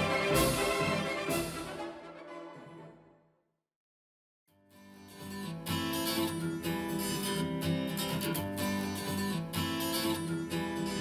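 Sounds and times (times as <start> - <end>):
strummed acoustic guitar: 4.6 - 11.0.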